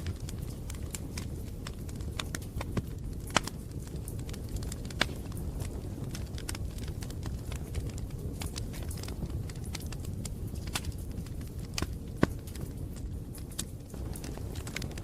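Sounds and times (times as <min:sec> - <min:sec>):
burning wood crackling and popping: 0:00.0 - 0:15.0
low rumble of flames: 0:00.0 - 0:15.0.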